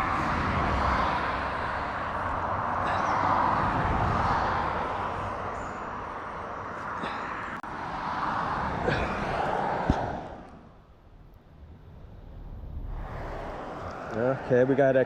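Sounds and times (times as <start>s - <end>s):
traffic passing: 0.0s - 15.0s.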